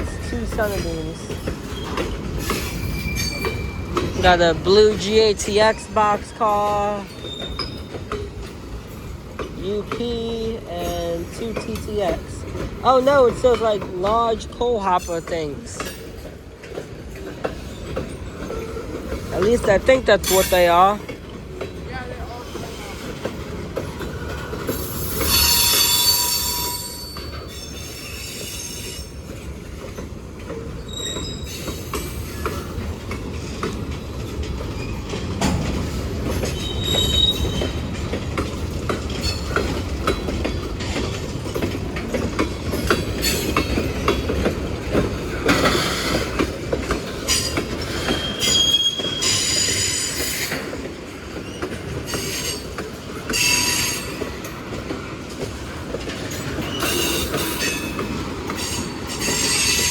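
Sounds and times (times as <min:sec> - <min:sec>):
freight train cars rolling: 0:00.0 - 0:59.9
wheels clicking over rail joints: 0:00.0 - 0:59.9
high-pitched wheel squeals: 0:01.8 - 0:03.9, 0:24.8 - 0:29.2, 0:30.8 - 0:32.4, 0:36.5 - 0:37.8, 0:48.1 - 0:50.5.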